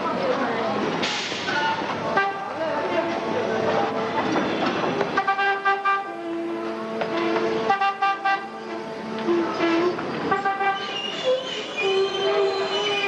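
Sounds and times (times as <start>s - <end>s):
street din: 0.0s - 13.0s
vehicle horns honking: 2.1s - 2.5s, 4.5s - 13.0s.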